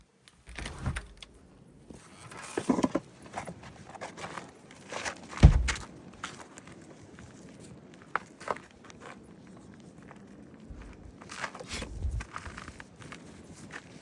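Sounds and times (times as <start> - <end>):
heavy low thump: 5.4 - 5.8
footsteps in deep snow: 10.6 - 14.0.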